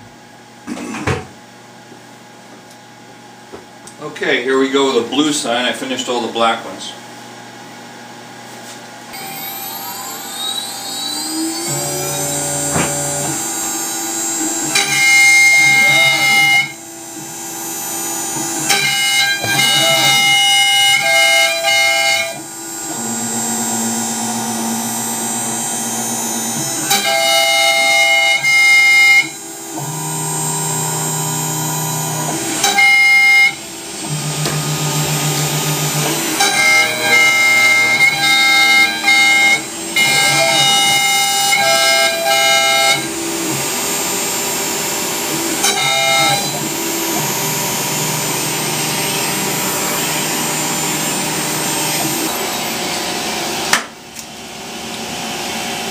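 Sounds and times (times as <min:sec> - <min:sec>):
stepper motors whining: 0:09.1 - 0:53.8.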